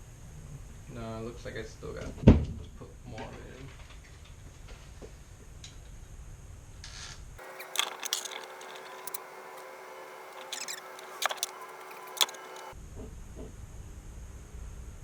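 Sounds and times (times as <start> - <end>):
plastic parts clicking: 7.4 - 12.8
rubber and plastic parts squeaking: 7.4 - 12.8.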